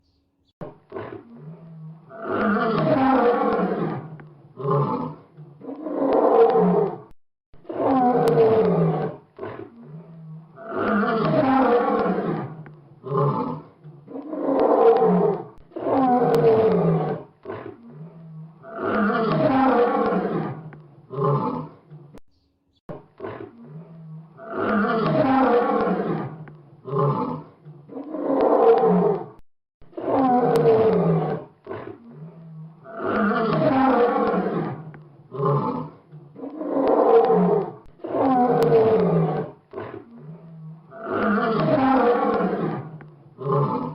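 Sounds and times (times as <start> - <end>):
lion roaring: 0.9 - 22.0, 23.2 - 43.9
lion grunting calls: 23.2 - 43.9.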